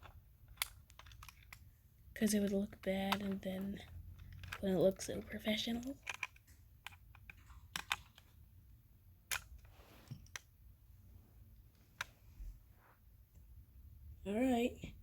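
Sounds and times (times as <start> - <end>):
toy car parts clicking: 0.0 - 1.7, 2.3 - 8.3, 9.3 - 10.4.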